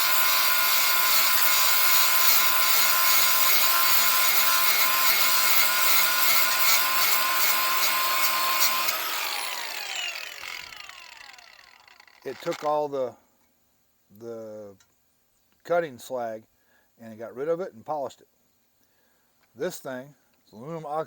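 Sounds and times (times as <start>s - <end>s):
grinder disc spinning down: 0.0s - 12.8s
angle grinder grinding metal: 0.0s - 12.9s.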